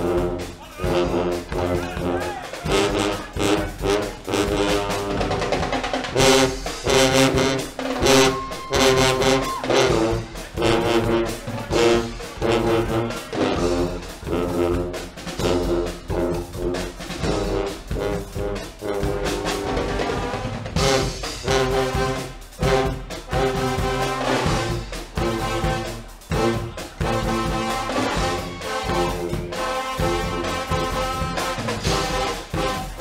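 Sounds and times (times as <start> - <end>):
brass band playing rhythmic chords: 0.0 - 33.0.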